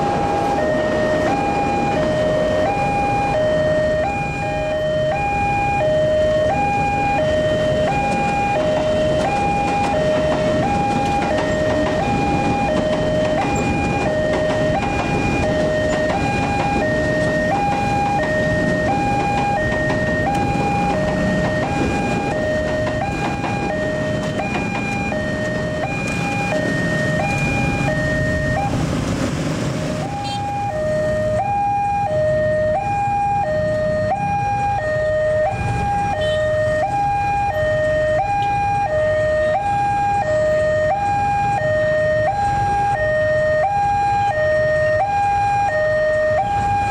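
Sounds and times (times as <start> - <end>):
level crossing two-tone alarm: 0.0 - 28.8, 30.0 - 46.9
road traffic rumble: 0.0 - 46.9.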